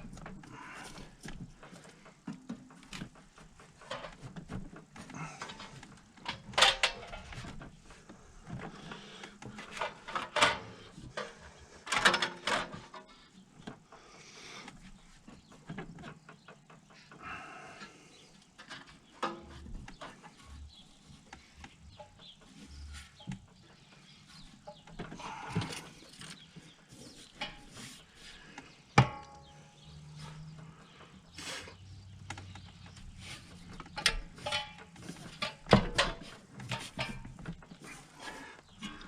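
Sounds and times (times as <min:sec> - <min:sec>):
hand tools clinking on metal parts: 0:05.2 - 0:07.4, 0:32.4 - 0:39.0.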